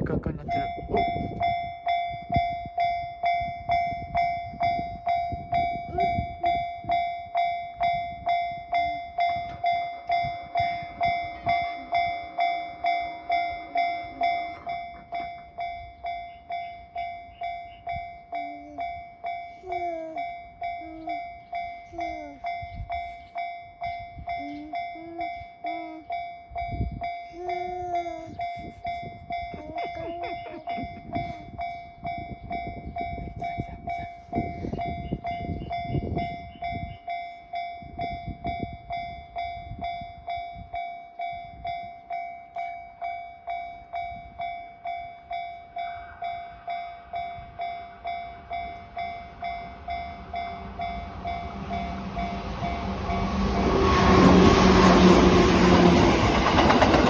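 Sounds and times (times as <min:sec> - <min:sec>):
train rumble: 0:00.0 - 0:57.0
level crossing bell ringing: 0:00.5 - 0:38.0.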